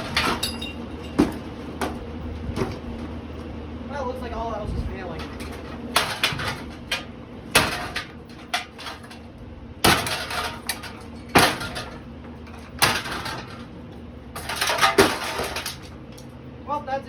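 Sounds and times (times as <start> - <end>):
fan parts clattering: 0.0 - 16.9
heavy blows smashing a ceiling fan: 9.8 - 12.0.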